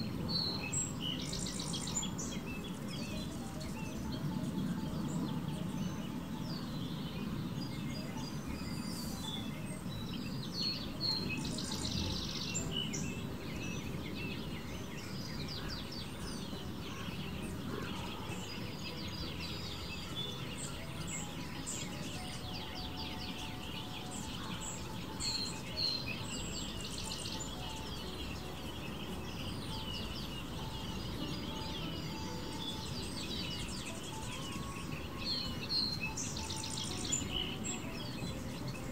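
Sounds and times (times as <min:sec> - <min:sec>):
songbirds chirping: 0:00.0 - 0:38.9.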